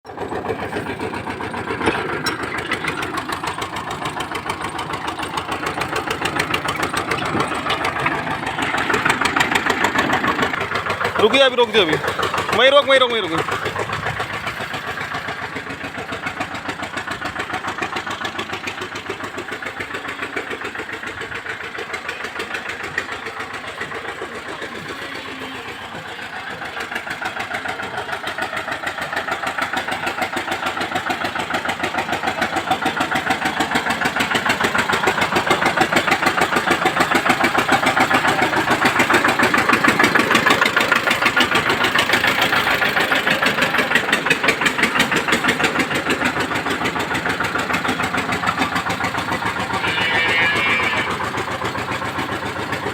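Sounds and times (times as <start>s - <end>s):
engine running: 0.1s - 52.9s.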